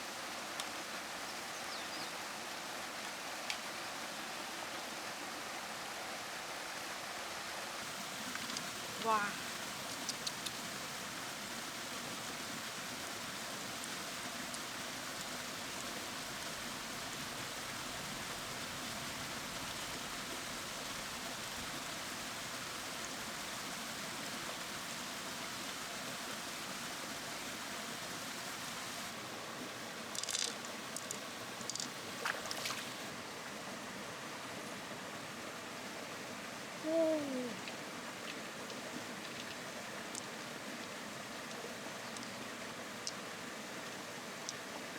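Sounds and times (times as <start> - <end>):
running water: 0.0 - 44.9.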